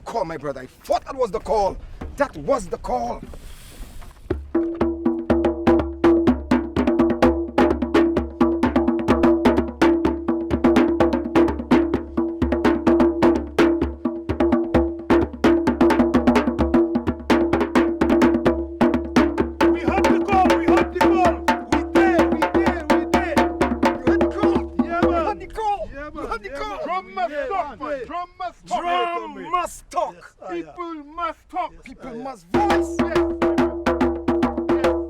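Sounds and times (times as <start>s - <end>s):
wood block percussion strikes: 4.3s - 25.2s
wavering voice-like sounds: 19.7s - 23.4s, 31.6s - 33.8s.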